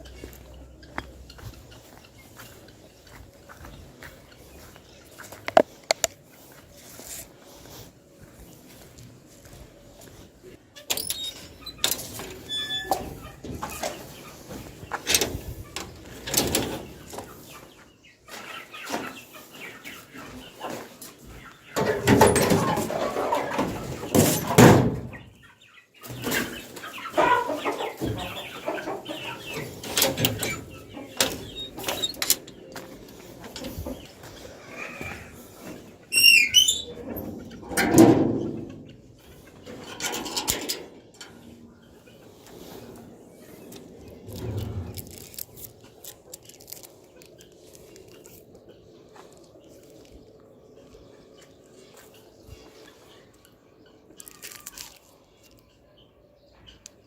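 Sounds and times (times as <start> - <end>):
chickens clucking: 0.0 - 57.0
bird chirping: 25.1 - 37.5
rustling scraping noise: 28.2 - 48.4
rustling: 43.7 - 48.4
soft scrapes and clicks: 43.7 - 48.4.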